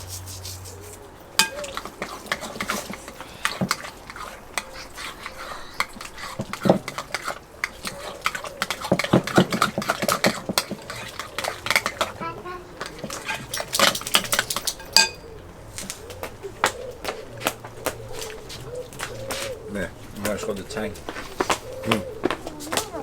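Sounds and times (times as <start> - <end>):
spoon clinking and scraping bowl: 0.0 - 12.2, 12.8 - 15.4.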